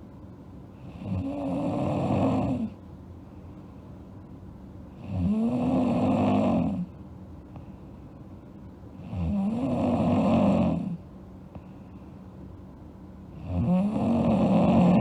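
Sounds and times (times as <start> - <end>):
low steady hum: 0.0 - 15.0
girl snoring: 5.1 - 6.9, 9.1 - 11.0, 13.4 - 15.0.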